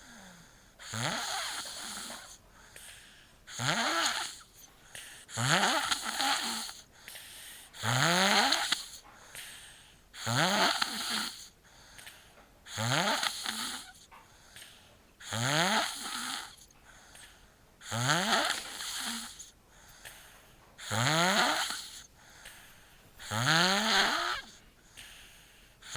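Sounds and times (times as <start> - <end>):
person snoring: 0.0 - 9.0, 10.2 - 11.5, 12.7 - 14.0, 15.2 - 20.2, 20.8 - 22.6, 23.2 - 25.2.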